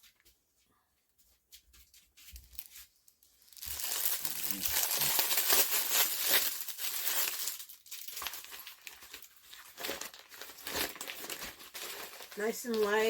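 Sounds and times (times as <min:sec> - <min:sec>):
plastic packaging crinkling: 0:02.4 - 0:13.0.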